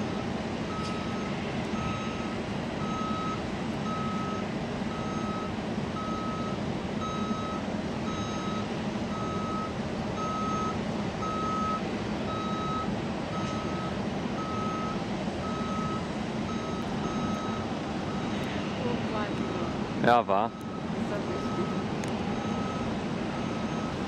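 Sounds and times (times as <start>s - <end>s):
reversing alarm beeping: 0.7s - 24.0s.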